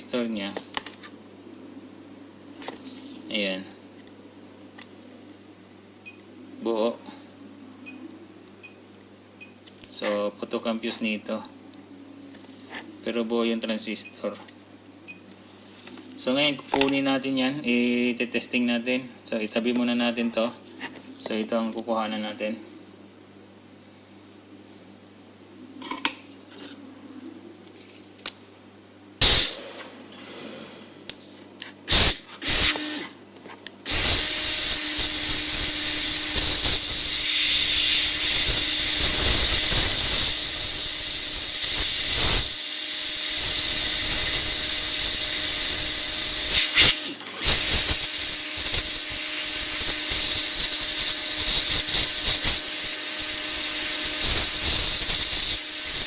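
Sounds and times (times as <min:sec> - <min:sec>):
hot-air gun blowing: 0:29.2 - 0:29.8, 0:31.9 - 0:33.2, 0:33.8 - 0:56.0.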